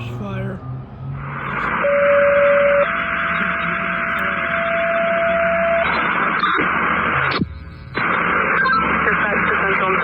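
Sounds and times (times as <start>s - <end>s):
radio hiss: 2.9s - 10.0s.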